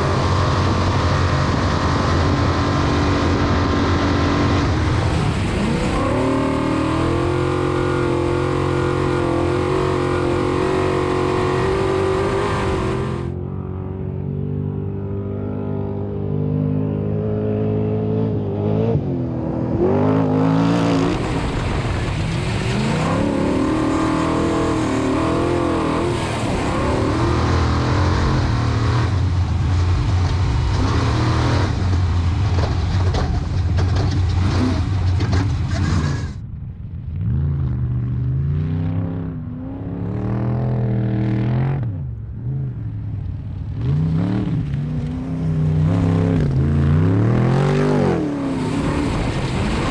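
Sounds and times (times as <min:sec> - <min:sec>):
race truck engine revving: 0:00.0 - 0:13.6, 0:17.7 - 0:36.4, 0:43.8 - 0:49.9.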